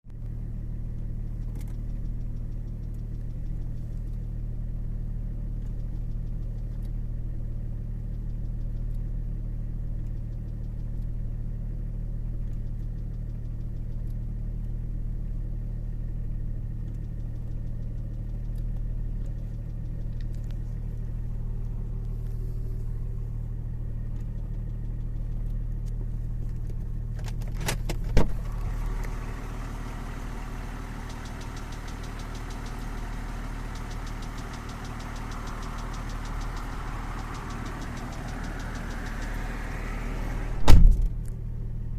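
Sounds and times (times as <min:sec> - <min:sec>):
diesel engine idling: 0:17.4 - 0:27.2, 0:27.9 - 0:41.9
sharp clicks: 0:30.7 - 0:41.4
loud clunk: 0:37.3 - 0:41.3.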